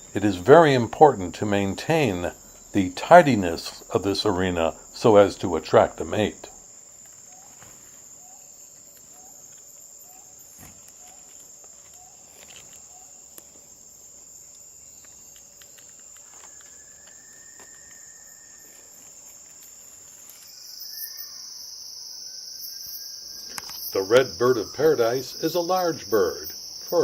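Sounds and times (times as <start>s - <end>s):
insects droning: 0.0s - 27.0s
long whistle-like tone: 16.4s - 19.1s, 20.8s - 23.4s.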